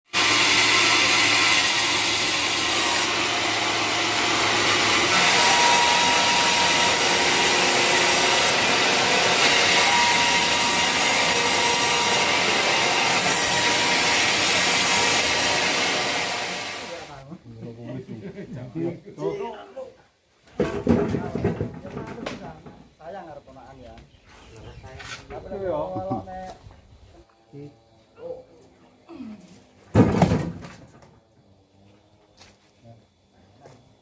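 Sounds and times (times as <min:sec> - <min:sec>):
sawmill blade cutting log: 0:00.2 - 0:17.1.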